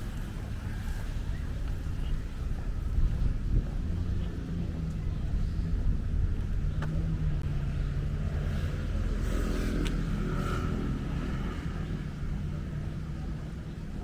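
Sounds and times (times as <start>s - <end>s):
wind buffeting microphone: 0.0s - 14.0s
motor vehicle passing: 3.1s - 14.0s.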